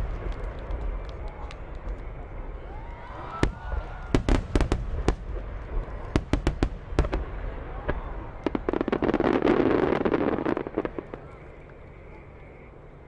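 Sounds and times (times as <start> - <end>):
fireworks crackling pops: 0.0 - 12.6
fireworks bangs: 3.2 - 12.5.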